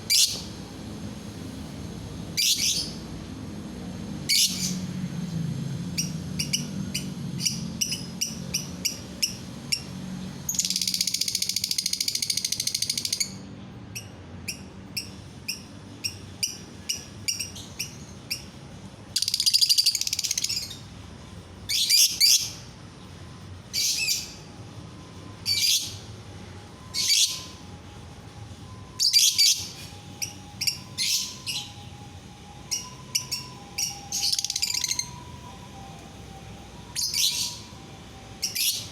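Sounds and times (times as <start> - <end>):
bird fast trills: 0.0 - 0.5, 26.8 - 27.7, 28.8 - 32.0, 32.6 - 35.6
shrill bird calls: 0.0 - 0.5, 2.4 - 3.0, 4.3 - 4.9, 10.5 - 13.4, 19.2 - 20.9, 21.7 - 22.7, 23.7 - 24.5, 25.4 - 26.1, 26.8 - 27.7, 28.6 - 35.8, 36.8 - 38.9
lovebird chirping: 6.0 - 9.9, 26.8 - 27.6, 28.6 - 32.0, 32.7 - 35.6.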